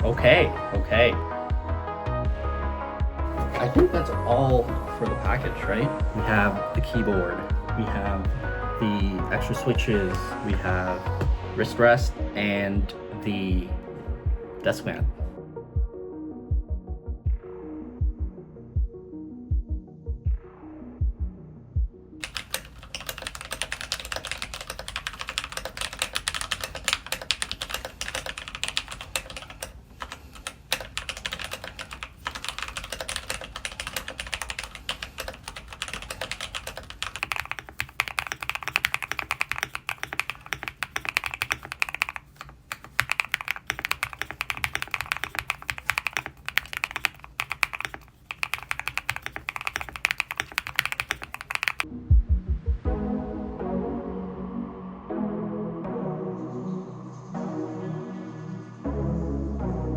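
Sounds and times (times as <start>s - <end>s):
mechanical keyboard typing: 22.2s - 51.9s.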